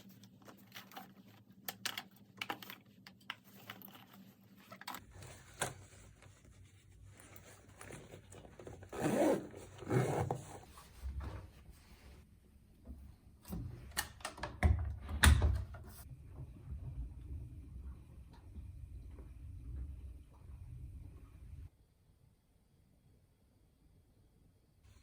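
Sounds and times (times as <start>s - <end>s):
rustling cosmetics bag: 0.0s - 11.1s.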